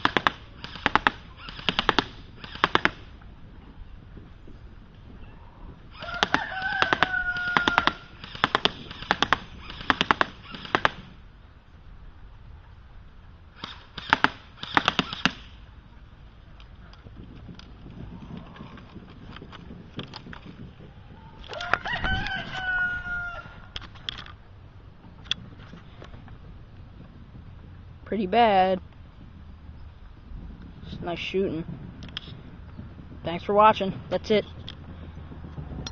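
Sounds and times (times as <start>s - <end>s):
airsoft rifle shots: 0.0s - 3.2s, 5.9s - 11.2s, 13.5s - 15.7s
sharp clicks: 0.0s - 3.2s, 5.9s - 11.1s, 13.6s - 15.6s, 18.4s - 20.6s, 32.0s - 32.4s, 35.5s - 35.9s
rooster crowing: 6.0s - 8.2s, 21.2s - 23.8s.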